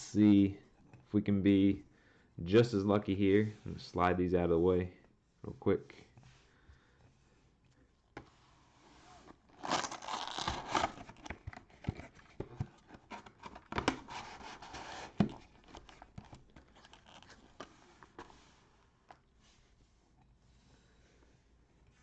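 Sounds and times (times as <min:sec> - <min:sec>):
cards and packaging rustling: 0:09.2 - 0:19.4
cellophane crinkling and tearing: 0:09.5 - 0:12.1, 0:12.9 - 0:17.7.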